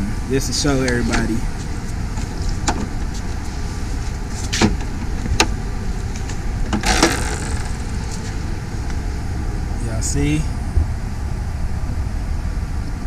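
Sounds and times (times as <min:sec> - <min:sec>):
low outdoor rumble: 0:00.0 - 0:13.0
sharp clicks and knocks: 0:06.2 - 0:08.4.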